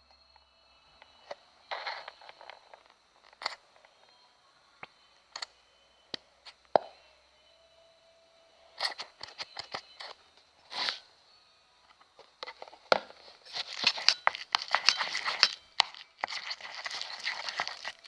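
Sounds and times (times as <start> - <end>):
slime stirred with a spatula: 13.2 - 18.0.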